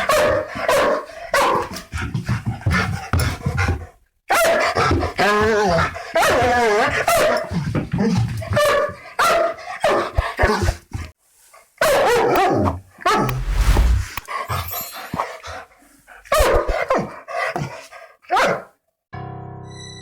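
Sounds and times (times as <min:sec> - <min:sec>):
dog barking aggressively: 0:00.0 - 0:01.7, 0:08.5 - 0:10.6, 0:18.3 - 0:18.7.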